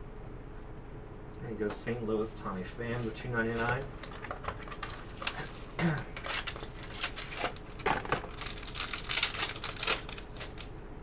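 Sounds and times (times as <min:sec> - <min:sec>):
packaging crinkling and rustling: 0:02.9 - 0:10.8.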